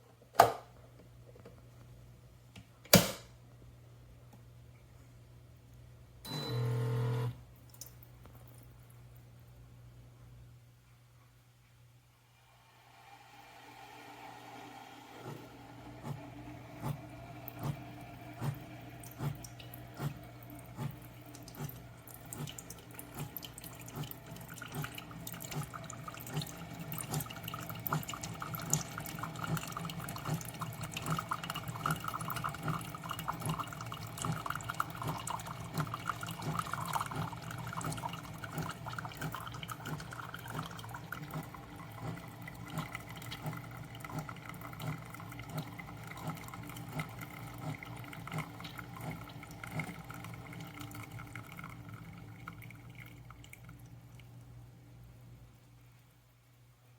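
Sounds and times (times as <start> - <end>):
coffee maker pulsing hum: 6.2 - 7.5, 12.3 - 55.5
liquid trickling into a cup: 15.3 - 54.5.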